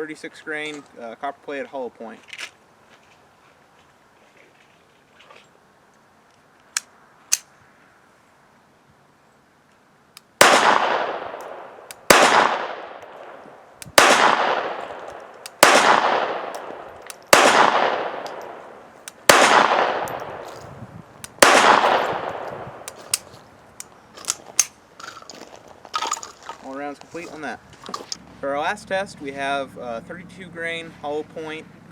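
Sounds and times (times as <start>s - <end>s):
pistol shots with echo: 10.4s - 20.6s, 21.3s - 23.3s.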